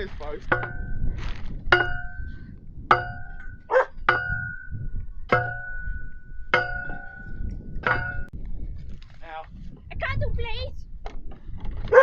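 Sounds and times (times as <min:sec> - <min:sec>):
hammer blows on metal post: 0:01.7 - 0:02.3, 0:02.9 - 0:08.3.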